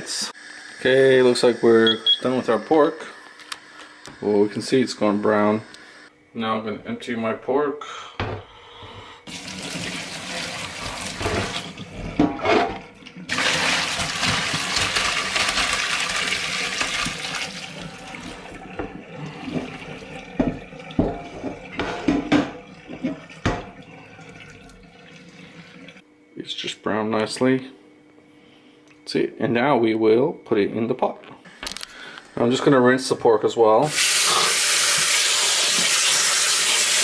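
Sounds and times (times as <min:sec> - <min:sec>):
water gushing into a sink: 0:09.3 - 0:12.0, 0:13.2 - 0:26.0, 0:33.9 - 0:37.0.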